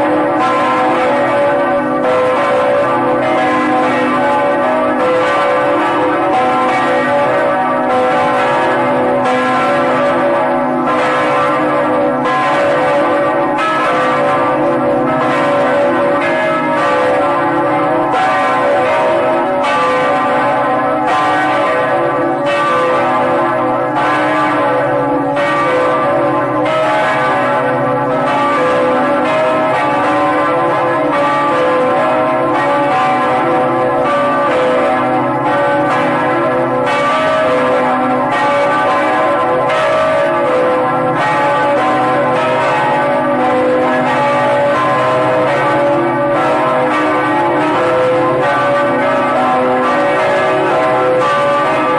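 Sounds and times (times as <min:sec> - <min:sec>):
church bells pealing: 0:00.0 - 0:51.9.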